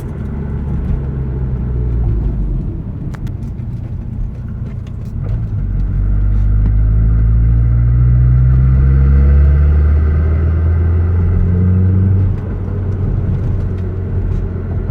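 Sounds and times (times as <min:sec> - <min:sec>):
car engine accelerating: 0:00.0 - 0:14.9
loud exhaust: 0:06.0 - 0:14.9.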